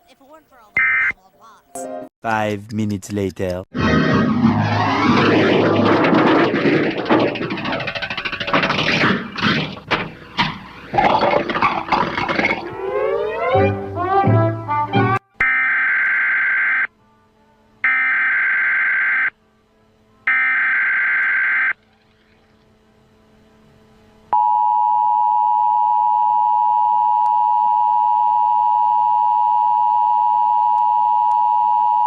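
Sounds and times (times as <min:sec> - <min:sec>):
data bursts: 0:00.8 - 0:01.2.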